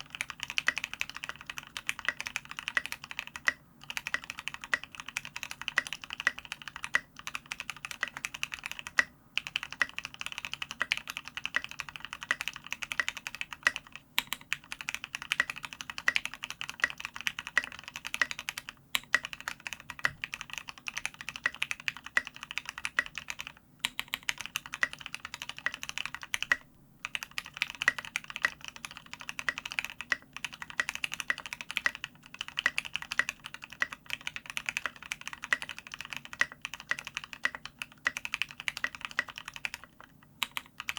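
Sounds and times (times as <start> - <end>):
fast mechanical keyboard typing: 0.0 - 40.9.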